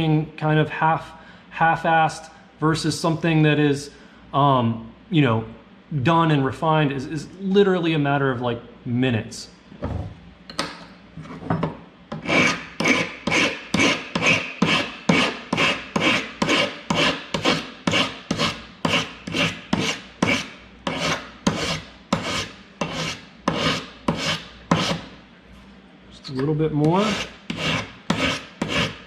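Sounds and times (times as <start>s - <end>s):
hand file scraping metal: 12.2s - 25.1s, 26.9s - 29.0s.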